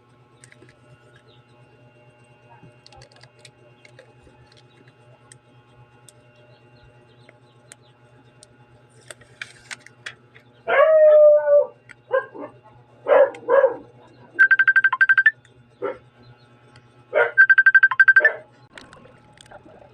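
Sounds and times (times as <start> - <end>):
low steady hum: 0.0 - 19.9
dog barking: 12.1 - 14.0, 15.8 - 16.0, 17.2 - 17.5, 18.2 - 18.5.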